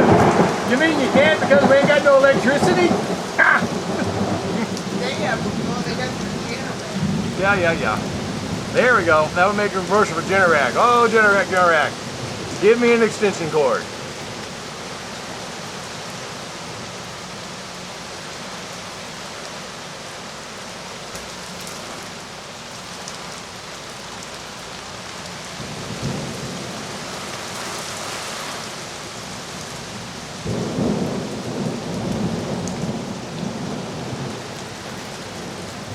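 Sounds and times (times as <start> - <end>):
thunder rumble: 0.0 - 15.1, 29.8 - 35.9
heavy rain pouring: 0.0 - 35.9.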